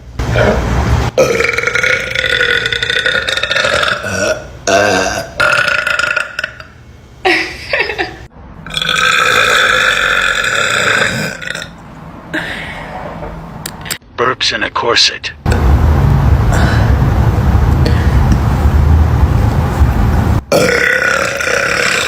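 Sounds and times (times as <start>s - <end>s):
woman belching: 1.2s - 6.8s, 8.7s - 11.8s, 20.5s - 22.0s.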